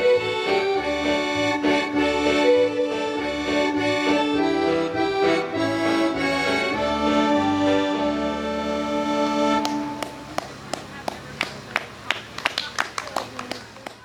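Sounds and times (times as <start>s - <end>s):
instrumental music with held chords: 0.0s - 10.7s.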